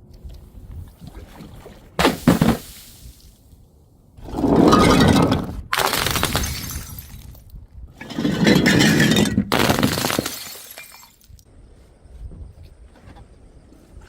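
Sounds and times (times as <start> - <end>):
glass bottles breaking: 4.6 - 7.4, 8.0 - 11.4.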